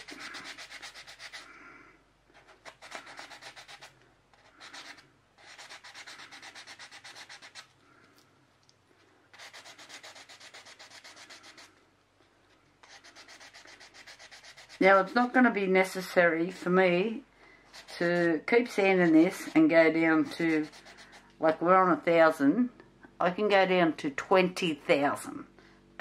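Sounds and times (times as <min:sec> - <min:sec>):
sandpaper rubbing on resin: 0:00.0 - 0:01.5, 0:02.4 - 0:07.7, 0:09.3 - 0:11.7, 0:12.8 - 0:16.8, 0:17.7 - 0:21.3.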